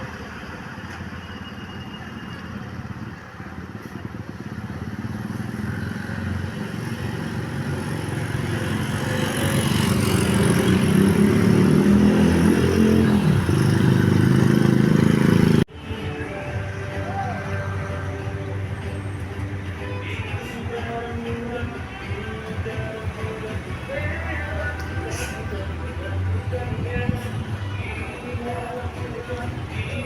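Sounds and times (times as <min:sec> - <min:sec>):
bus engine passing by: 0:02.7 - 0:15.7.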